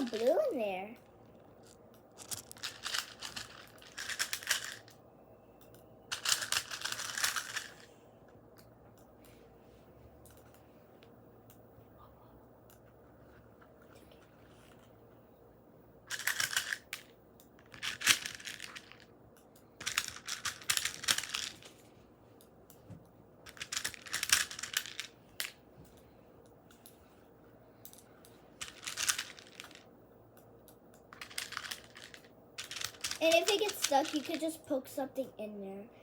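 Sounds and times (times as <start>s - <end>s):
plastic beads rattling: 0.0s - 0.6s, 1.6s - 5.0s, 6.1s - 7.9s, 16.1s - 19.1s, 19.8s - 21.8s, 23.5s - 25.6s, 28.6s - 29.9s, 31.1s - 34.6s.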